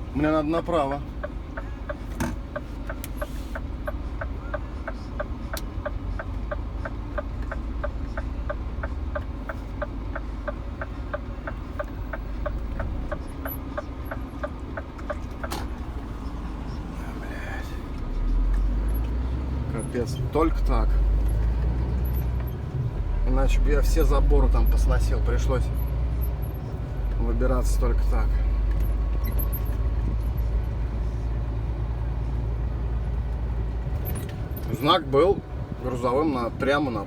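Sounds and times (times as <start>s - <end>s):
truck engine rumble: 0.0s - 37.0s.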